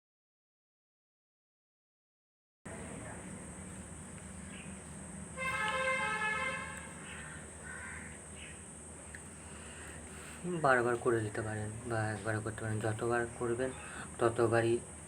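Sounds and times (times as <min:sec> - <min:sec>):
background hiss and hum: 0:02.7 - 0:15.0
honk-like pitched tone: 0:05.4 - 0:07.3.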